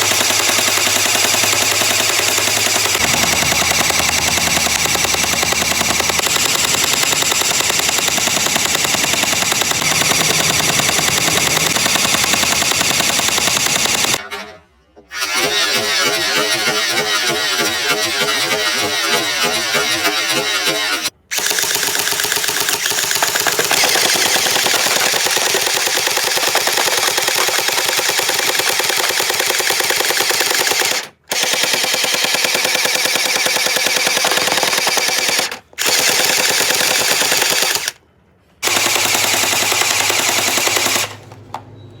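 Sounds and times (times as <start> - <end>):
airsoft gun firing full auto: 0.0 - 14.5, 15.2 - 38.0, 38.6 - 41.3.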